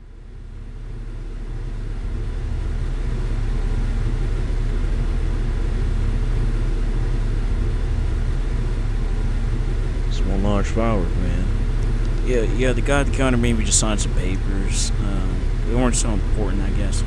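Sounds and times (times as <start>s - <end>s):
steady low rumble: 10.0s - 17.0s.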